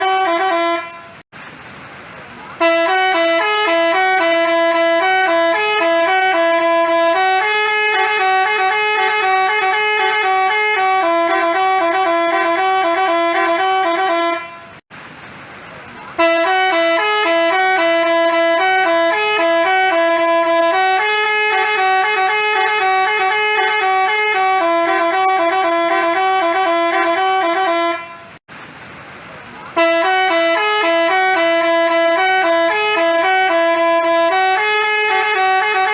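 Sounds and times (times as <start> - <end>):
musical horn melody: 0.0 - 1.2, 2.6 - 14.8, 16.2 - 28.4, 29.8 - 35.9.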